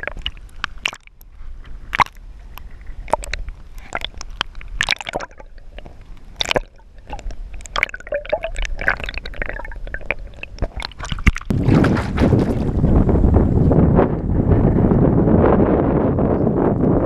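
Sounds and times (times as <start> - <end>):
water splashing and dripping: 0.0 - 1.3, 1.9 - 12.9
wind rumble on microphone: 0.0 - 17.0.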